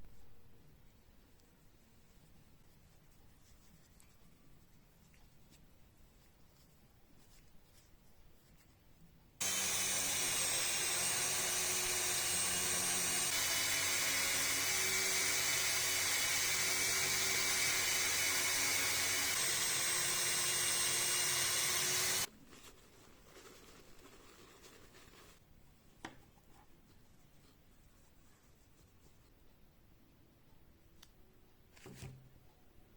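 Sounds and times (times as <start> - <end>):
rotary tool polishing metal: 9.4 - 22.3.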